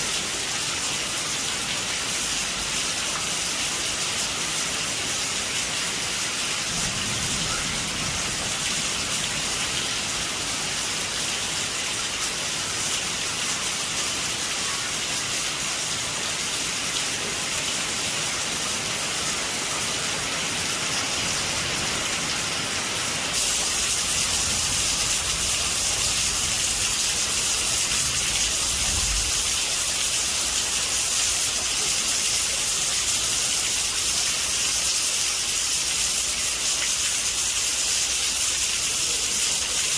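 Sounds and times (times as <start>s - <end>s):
heavy rain on a metal roof: 0.0s - 39.9s
thunder rumbling: 6.7s - 10.2s, 23.5s - 29.8s.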